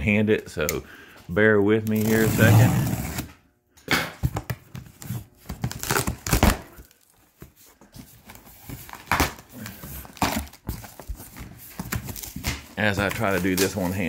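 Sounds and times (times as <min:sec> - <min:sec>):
cardboard crinkling and rustling: 0:04.3 - 0:14.0.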